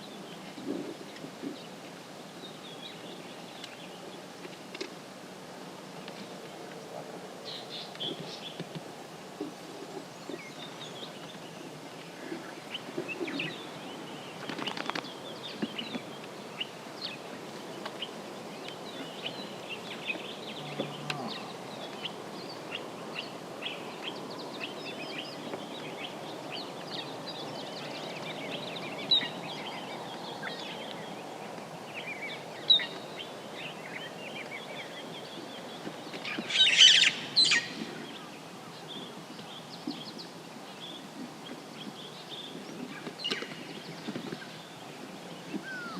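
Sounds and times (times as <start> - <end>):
birds chirping and whistling: 33.9 - 38.2, 45.6 - 45.9
harsh bird calling: 36.2 - 38.0, 45.6 - 45.9.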